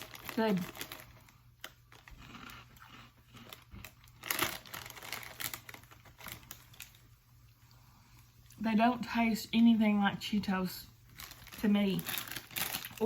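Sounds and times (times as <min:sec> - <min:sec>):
snack bag crinkling: 0:00.0 - 0:07.7, 0:11.1 - 0:13.0.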